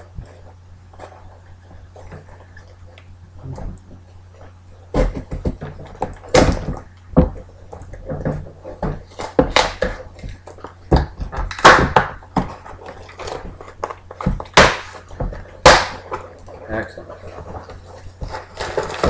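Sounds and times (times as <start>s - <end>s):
package knocks and thumps: 4.9s - 16.3s.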